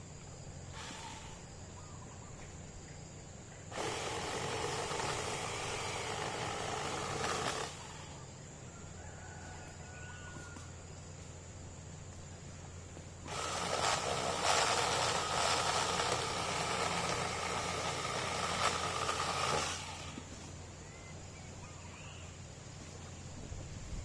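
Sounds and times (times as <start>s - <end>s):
electric chainsaw whining: 0.7s - 1.4s, 3.7s - 8.2s, 13.2s - 20.5s.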